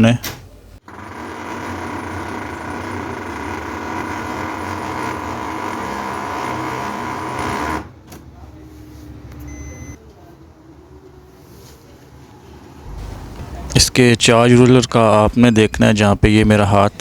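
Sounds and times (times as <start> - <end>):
quieter machine sounds: 0.0 - 8.5
copier mechanical noise and whine: 0.0 - 17.0.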